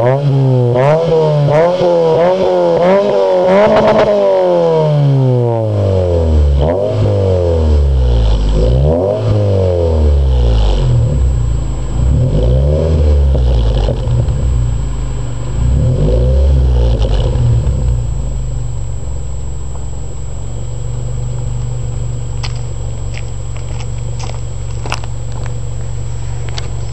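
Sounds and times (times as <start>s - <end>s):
car engine revving: 0.0s - 26.9s
car engine idling: 7.3s - 26.9s.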